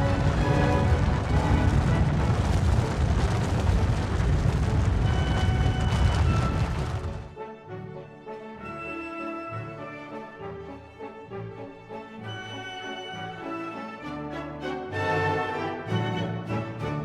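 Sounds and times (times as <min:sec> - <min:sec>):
orchestral music with brass: 0:00.0 - 0:03.2, 0:05.0 - 0:17.0
avalanche rumble: 0:00.0 - 0:07.4.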